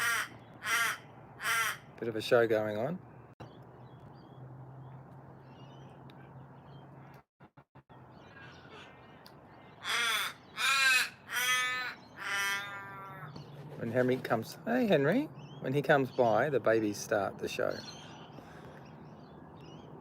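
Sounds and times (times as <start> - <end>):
raven cawing: 0.0 - 2.0, 8.2 - 13.4.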